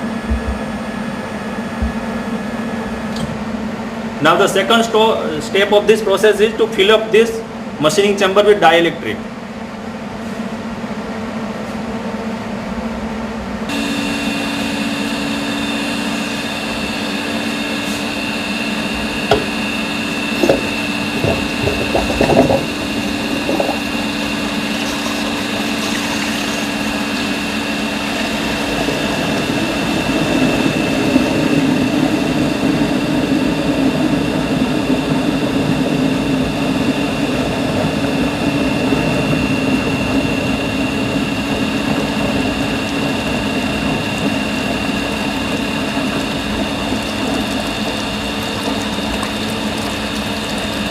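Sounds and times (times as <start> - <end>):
pump humming and whining: 0.0 - 50.9
knocks: 19.3 - 19.6, 20.4 - 22.7.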